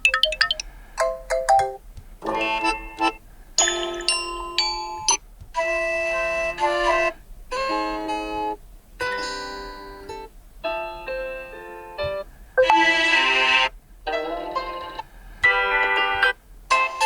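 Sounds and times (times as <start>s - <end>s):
melodic alarm tones: 0.0s - 5.2s, 12.6s - 13.1s.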